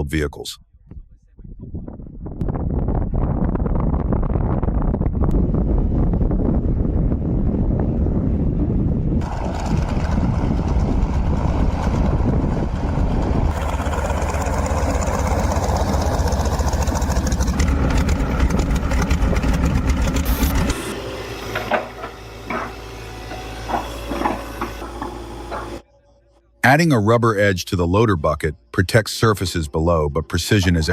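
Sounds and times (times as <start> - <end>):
low hum: 0.6 - 30.9
vehicle engine running loudly: 4.4 - 25.8.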